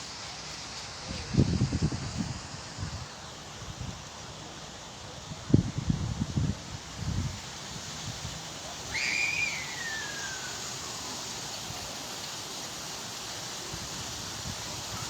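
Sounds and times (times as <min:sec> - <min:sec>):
wind and rain hiss: 0:00.0 - 0:15.0
whistled note gliding down: 0:08.9 - 0:10.9.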